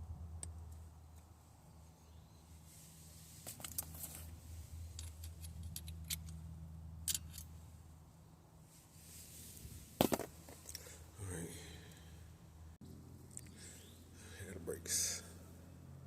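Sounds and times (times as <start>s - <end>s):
metallic tool clicks and clinks: 5.0s - 6.4s, 7.0s - 7.5s.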